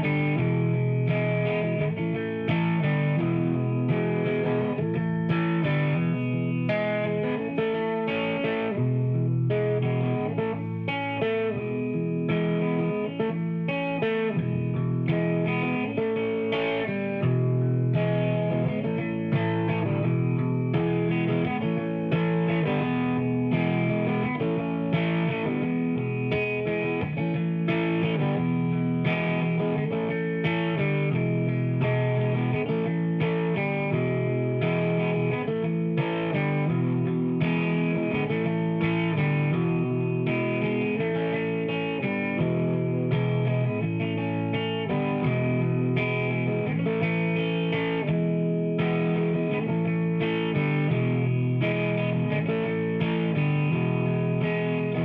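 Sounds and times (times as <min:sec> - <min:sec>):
distorted electric guitar: 0:00.0 - 0:55.0.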